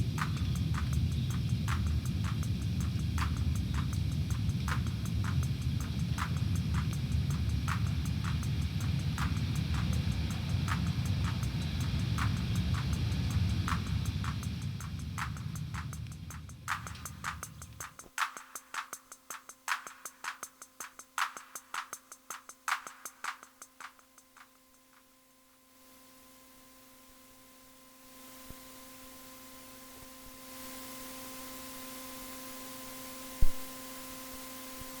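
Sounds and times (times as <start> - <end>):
steady hiss: 0.0 - 25.1, 27.6 - 35.0
drum machine clicky hits: 33.4 - 33.7
sharp thump: 33.4 - 33.7.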